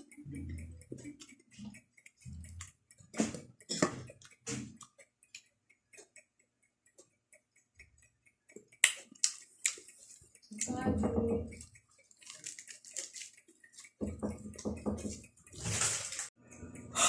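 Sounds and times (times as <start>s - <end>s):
chewing with wet crunching: 11.6s - 14.0s.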